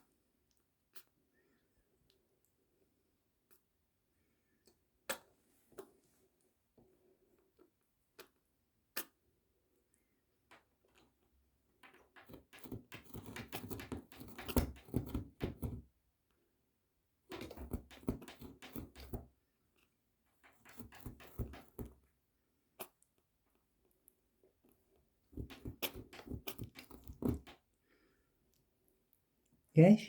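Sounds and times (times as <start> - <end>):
kitten licking and smacking food: 0.1 - 3.8, 7.2 - 9.3.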